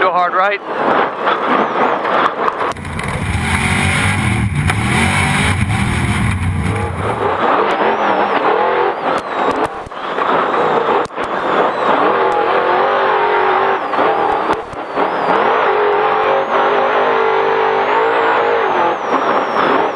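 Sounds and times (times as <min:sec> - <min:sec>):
truck engine running hard: 0:02.7 - 0:09.2.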